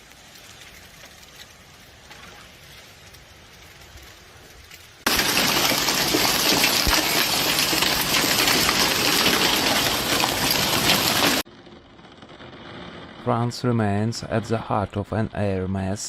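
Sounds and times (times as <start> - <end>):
heavy rain downpour: 0.0 - 11.4.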